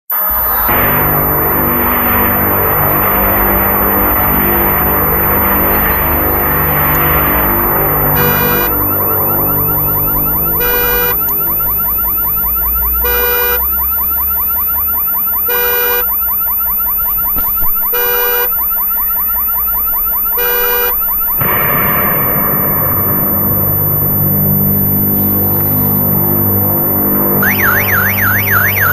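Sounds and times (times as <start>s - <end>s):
car alarm warbling chirp: 0.1s - 28.9s
short piercing alarm beep: 0.1s - 28.9s
low engine rumble: 0.5s - 9.8s
traffic noise: 0.6s - 10.0s.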